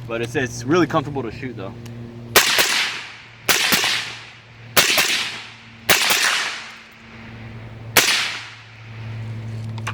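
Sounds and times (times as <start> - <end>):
suppressed rifle shots echoing: 2.4 - 6.9, 8.0 - 8.7.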